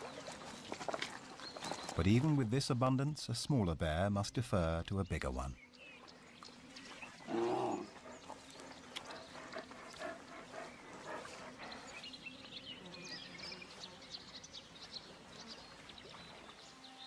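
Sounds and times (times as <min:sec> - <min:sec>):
bear growling: 0:07.2 - 0:12.0.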